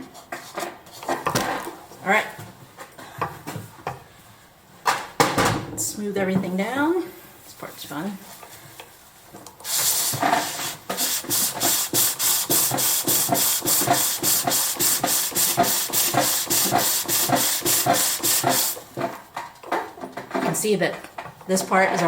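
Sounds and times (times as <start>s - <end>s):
scraping wood on a pole lathe: 9.8s - 18.8s.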